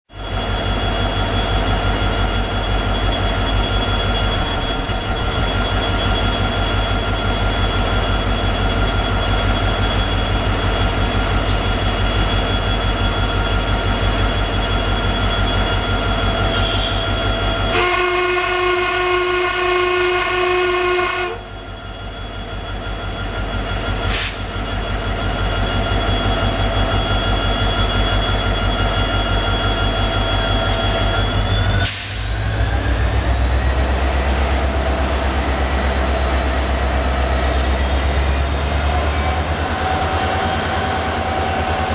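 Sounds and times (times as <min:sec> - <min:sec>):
diesel locomotive engine running: 0:00.1 - 0:41.9
locomotive horn chord: 0:17.7 - 0:21.5.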